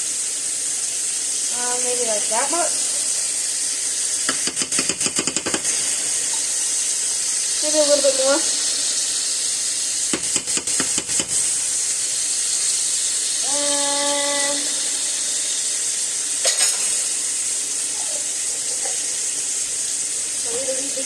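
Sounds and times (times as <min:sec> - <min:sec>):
steaks sizzling in a pan: 0:00.0 - 0:21.0
spoon tapping a pan: 0:04.3 - 0:06.5, 0:10.1 - 0:11.5.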